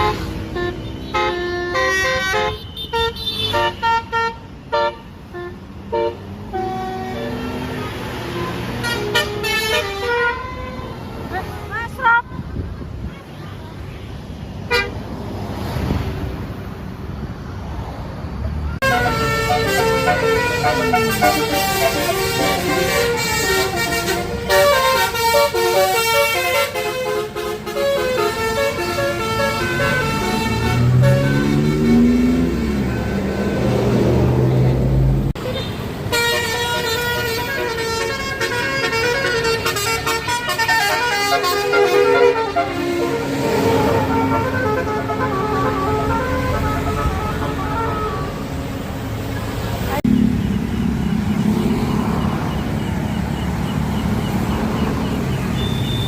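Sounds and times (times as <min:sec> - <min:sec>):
multi-tone bus air horn tune: 0:00.0 - 0:11.8, 0:14.7 - 0:15.0, 0:18.8 - 0:33.2, 0:35.4 - 0:49.2, 0:55.5 - 0:56.0
vehicle rumble passing: 0:27.2 - 0:56.0.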